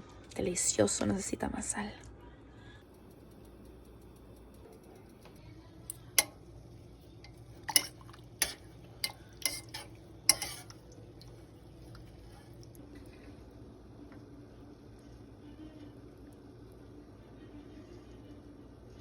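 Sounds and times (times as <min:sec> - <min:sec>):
faint low hum: 0:00.0 - 0:19.0
spoon tapping against a pot: 0:05.9 - 0:06.4, 0:07.2 - 0:10.7.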